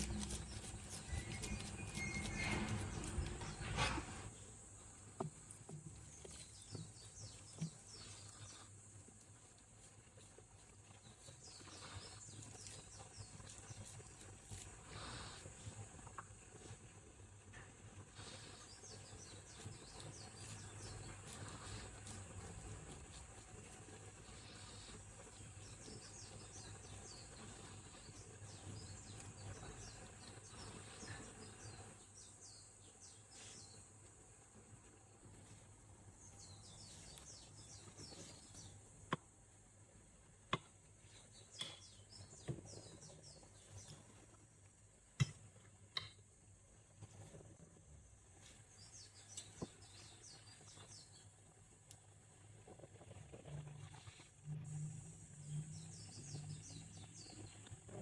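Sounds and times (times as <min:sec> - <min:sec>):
faint high chirping: 0:00.0 - 0:03.9.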